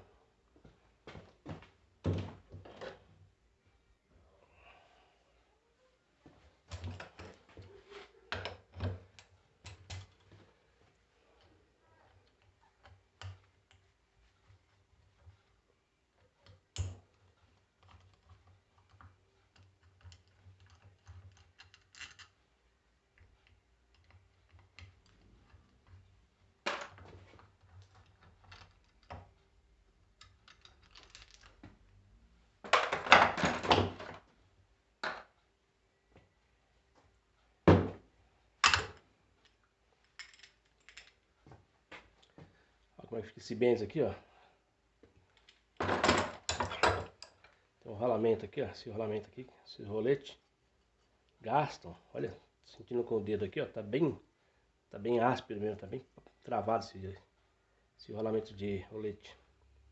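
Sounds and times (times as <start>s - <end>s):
small metal parts clicking: 17.8s - 22.4s, 30.1s - 31.6s, 40.1s - 41.2s.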